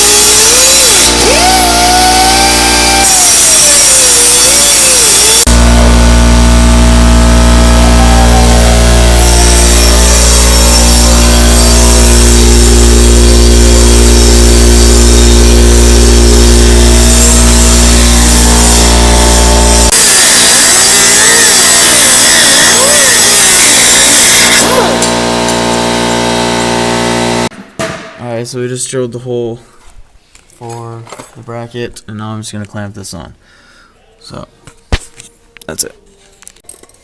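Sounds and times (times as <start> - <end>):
high hissing whir: 0.0 - 25.1
pneumatic air drill boring metal: 0.0 - 27.5.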